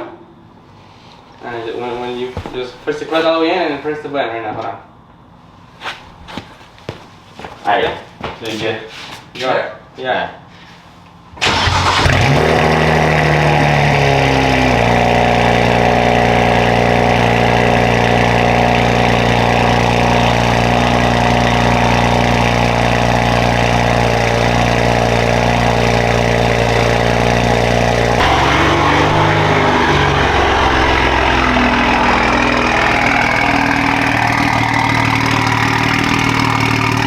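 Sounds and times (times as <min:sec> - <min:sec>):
car engine idling: 0:11.4 - 0:37.0.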